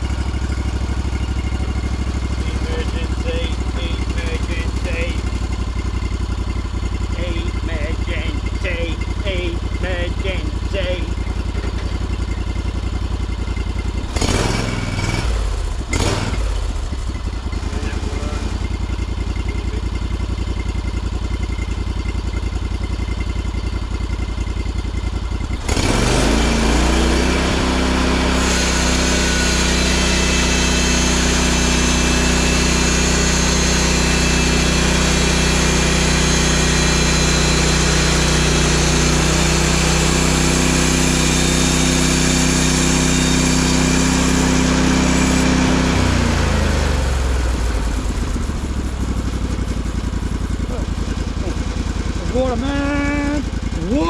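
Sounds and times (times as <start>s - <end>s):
sawmill engine running: 0.0s - 54.0s.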